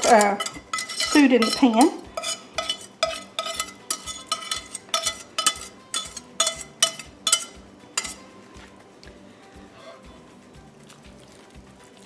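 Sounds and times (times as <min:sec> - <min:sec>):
spoon clinking on casserole dish: 0:00.0 - 0:08.7.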